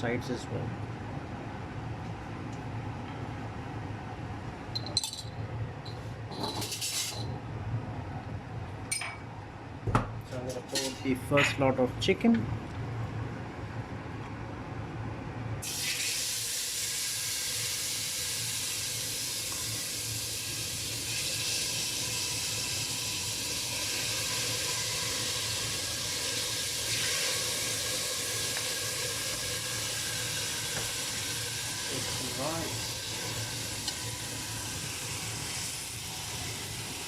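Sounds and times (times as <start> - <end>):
food sizzling in a pot: 15.6 - 37.0.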